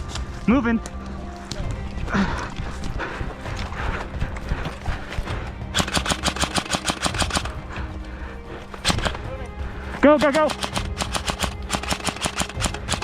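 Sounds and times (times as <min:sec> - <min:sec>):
hurried footsteps: 0:00.0 - 0:13.0
airsoft gun full-auto burst: 0:05.8 - 0:07.5, 0:10.2 - 0:13.0.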